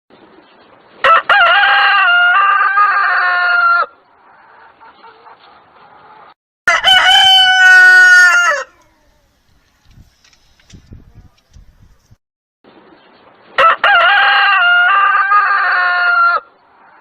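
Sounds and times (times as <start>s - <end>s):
rooster crowing: 1.0s - 4.0s, 6.7s - 8.8s, 13.6s - 17.0s.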